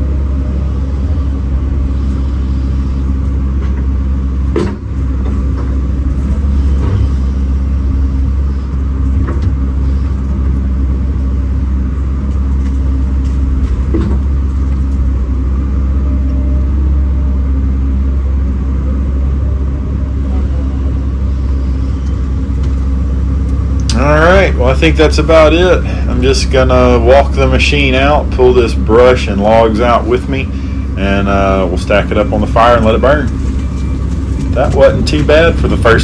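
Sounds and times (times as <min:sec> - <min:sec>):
excavator diesel engine running: 0:00.0 - 0:36.0
machine knocks and clunks: 0:03.5 - 0:07.4, 0:09.1 - 0:09.8, 0:12.6 - 0:15.0.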